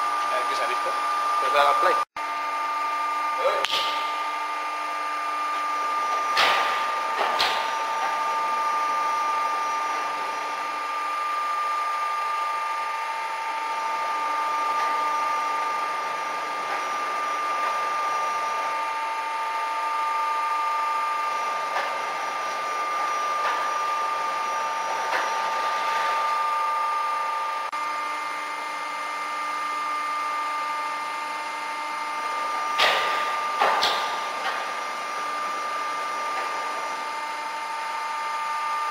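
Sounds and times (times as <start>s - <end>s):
machine whining: 0.0s - 38.9s
sharp machine knocks: 6.3s - 7.8s, 32.8s - 34.2s.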